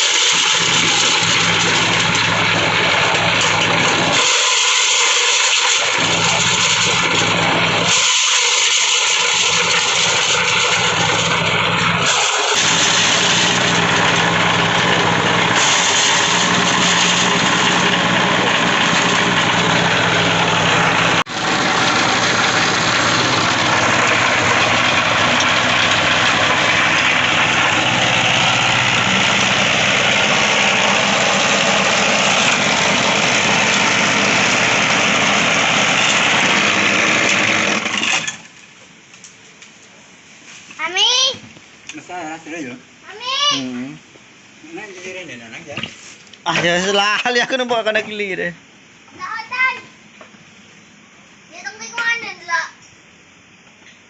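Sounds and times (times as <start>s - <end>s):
corn sheller running: 0.0s - 38.5s.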